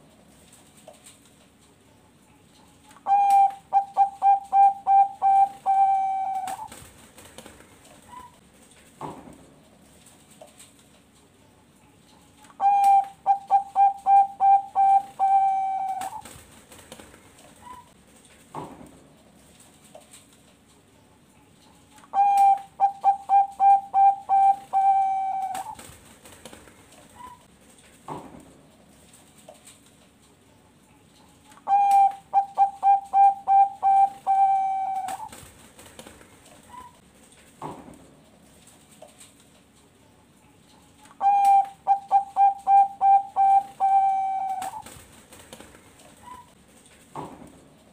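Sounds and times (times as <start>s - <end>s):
zebra dove cooing: 3.0s - 6.7s, 12.6s - 16.2s, 22.1s - 25.8s, 31.6s - 35.3s, 41.2s - 44.8s.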